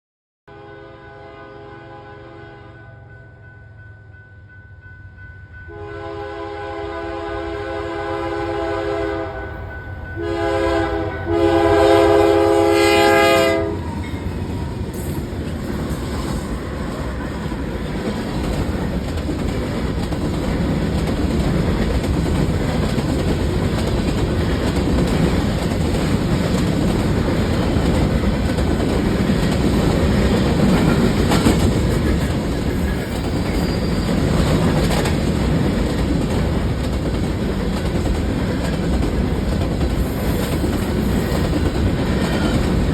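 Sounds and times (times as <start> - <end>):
locomotive horn chord: 0.5 - 3.1, 5.7 - 14.0
train rumbling on rails: 3.0 - 42.9.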